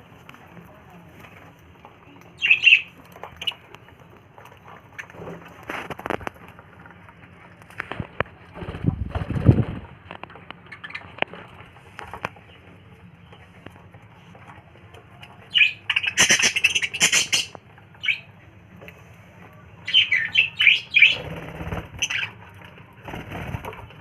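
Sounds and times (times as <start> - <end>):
budgerigars chirping and squawking: 2.4 - 3.6, 10.6 - 11.4, 15.5 - 18.3, 19.8 - 22.4
wings flapping: 7.7 - 12.3, 20.6 - 24.0.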